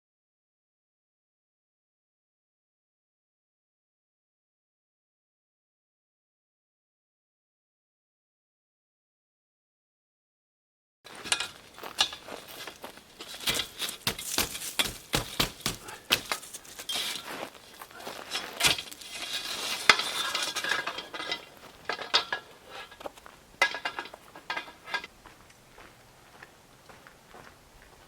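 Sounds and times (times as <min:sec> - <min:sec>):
dishes and cutlery clinking: 0:11.1 - 0:17.3, 0:17.9 - 0:25.1
rustling: 0:11.1 - 0:25.4.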